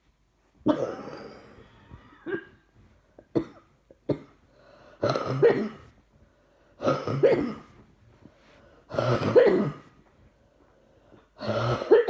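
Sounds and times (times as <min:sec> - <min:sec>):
woman coughing: 0:00.7 - 0:01.5, 0:05.0 - 0:05.8, 0:09.0 - 0:09.9, 0:11.5 - 0:12.0.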